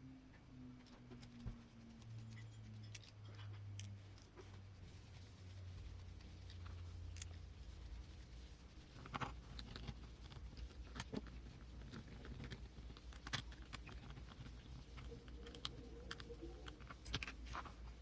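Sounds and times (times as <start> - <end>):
small plastic parts clicking: 0.8 - 4.4.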